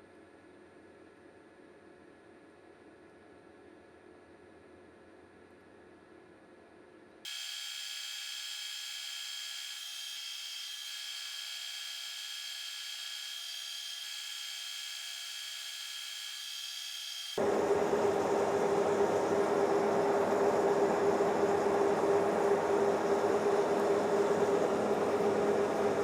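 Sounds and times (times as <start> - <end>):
machine tool cutting steel: 7.3 - 17.4.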